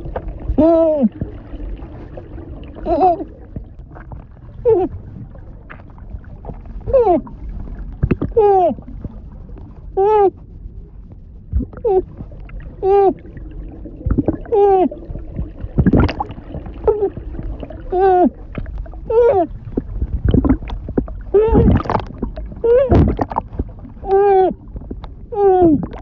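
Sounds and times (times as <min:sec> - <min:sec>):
gurgling bubbles: 0:00.0 - 0:26.0
woman muffled strained cries: 0:00.6 - 0:01.1, 0:08.4 - 0:08.8, 0:10.0 - 0:10.4, 0:11.8 - 0:12.1, 0:12.8 - 0:13.2, 0:14.5 - 0:15.0, 0:17.9 - 0:18.4, 0:19.1 - 0:19.5, 0:24.0 - 0:24.6, 0:25.3 - 0:25.9.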